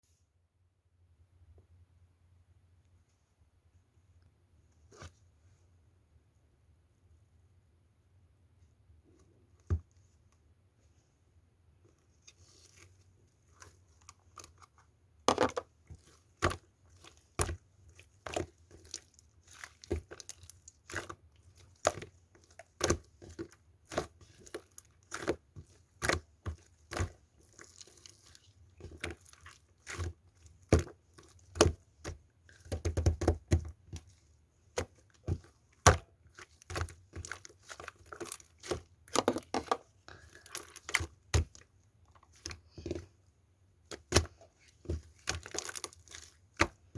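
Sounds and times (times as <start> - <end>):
slime popping and crackling: 45.0 - 46.8.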